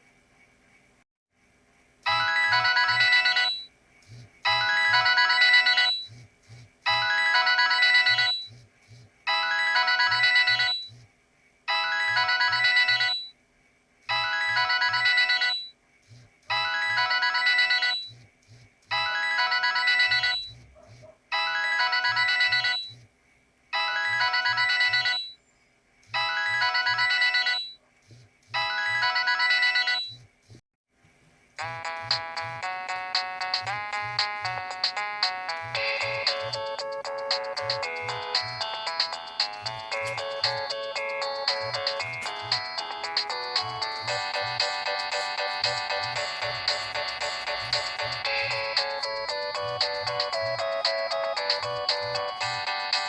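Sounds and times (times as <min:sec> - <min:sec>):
electronic phone ringtone: 0:02.1 - 0:03.7, 0:04.5 - 0:06.1, 0:06.9 - 0:08.5, 0:09.3 - 0:10.9, 0:11.7 - 0:13.3, 0:14.1 - 0:15.7, 0:16.5 - 0:18.1, 0:18.9 - 0:20.5, 0:21.4 - 0:22.9, 0:23.8 - 0:25.4, 0:26.2 - 0:27.8, 0:28.6 - 0:30.1, 0:31.6 - 0:53.0.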